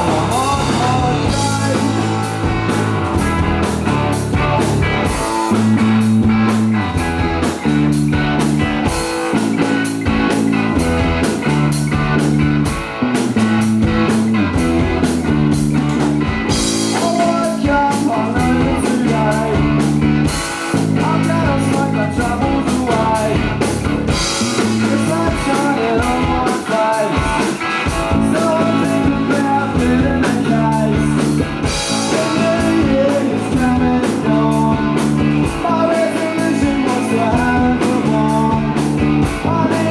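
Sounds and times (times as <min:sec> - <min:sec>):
melodic lead line: 0:00.0 - 0:26.3
bass line: 0:00.0 - 0:39.9
drum kit beat: 0:00.0 - 0:39.9
electric guitar: 0:00.0 - 0:39.9.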